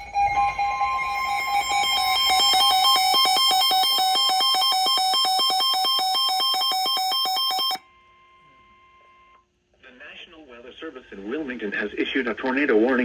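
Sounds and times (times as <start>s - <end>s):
steady electronic tone: 0.0s - 7.8s
rapid pulsing alarm beeps: 0.9s - 7.8s.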